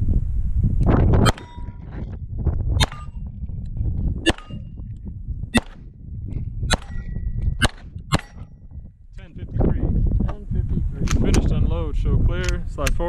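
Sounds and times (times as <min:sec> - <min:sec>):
metallic ring of steel target: 0:01.2 - 0:02.1, 0:02.8 - 0:03.3, 0:04.2 - 0:04.8, 0:05.5 - 0:05.8, 0:06.7 - 0:08.8
pistol shots: 0:01.3 - 0:01.6, 0:02.8 - 0:03.2, 0:04.3 - 0:04.7, 0:05.6 - 0:05.8, 0:06.7 - 0:08.5.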